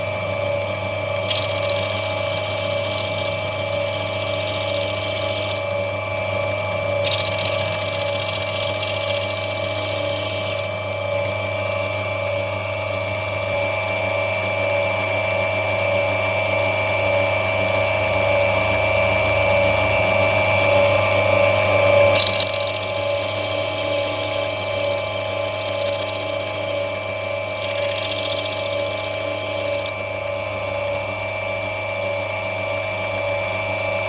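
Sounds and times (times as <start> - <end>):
grinding wheel running: 1.3 - 5.6, 7.0 - 11.0, 22.2 - 29.9
stone grinding on wheel: 1.3 - 5.6, 7.1 - 11.0, 22.2 - 29.9.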